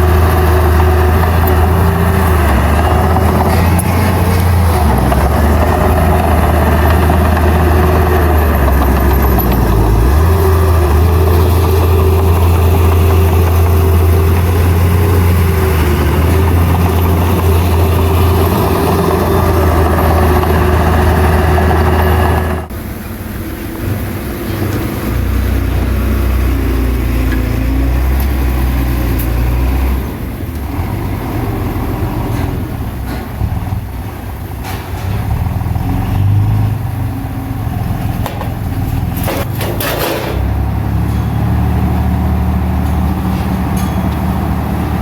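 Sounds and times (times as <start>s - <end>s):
heavy diesel engine droning: 0.0s - 45.0s.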